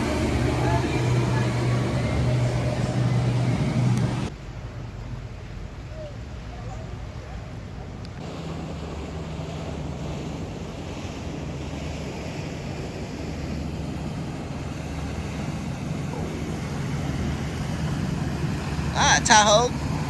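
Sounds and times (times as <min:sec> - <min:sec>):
water washing: 0:00.0 - 0:04.3, 0:06.2 - 0:20.0
wind on microphone: 0:00.0 - 0:04.3
motorboat engine humming: 0:00.0 - 0:20.0.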